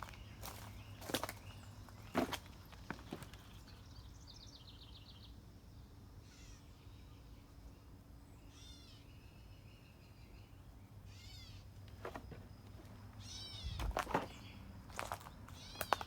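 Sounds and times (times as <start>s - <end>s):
footsteps crunching: 0.0s - 3.7s, 11.9s - 16.0s.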